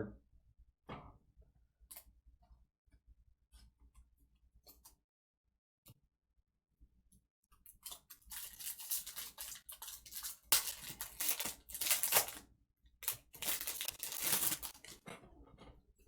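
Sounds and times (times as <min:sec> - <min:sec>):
foil pack tearing and crinkling: 0:07.8 - 0:12.4, 0:13.0 - 0:15.0.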